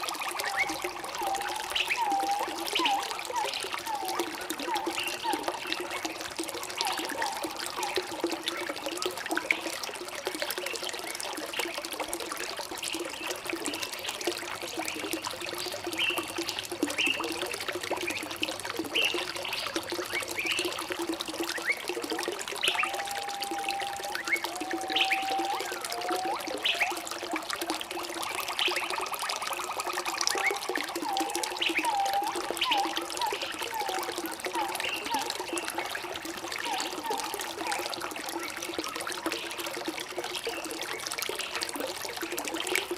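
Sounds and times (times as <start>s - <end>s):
stream water trickling: 0.0s - 42.9s
songbirds chirping: 12.9s - 20.8s, 21.4s - 27.0s, 30.0s - 39.6s.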